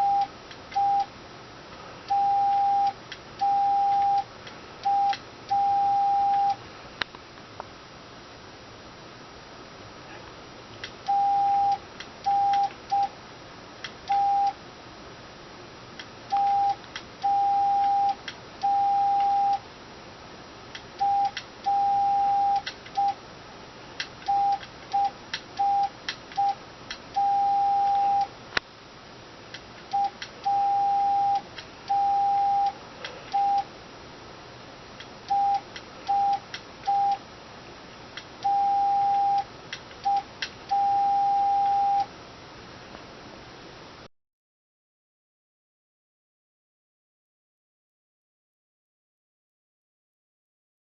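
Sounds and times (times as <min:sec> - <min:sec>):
morse code beeps: 0:00.0 - 0:01.1, 0:02.1 - 0:06.6, 0:11.1 - 0:13.1, 0:14.1 - 0:14.6, 0:16.3 - 0:19.6, 0:21.0 - 0:23.2, 0:24.3 - 0:26.6, 0:27.2 - 0:28.3, 0:29.9 - 0:33.7, 0:35.3 - 0:37.2, 0:38.4 - 0:42.1.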